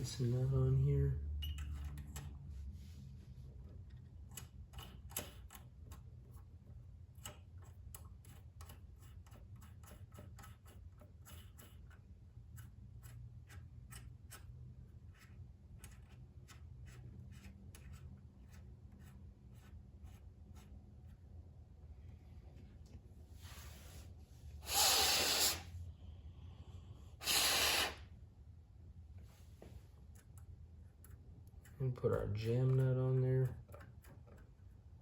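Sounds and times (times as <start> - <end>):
low steady hum: 0.0 - 24.7, 25.6 - 27.3, 28.0 - 35.0.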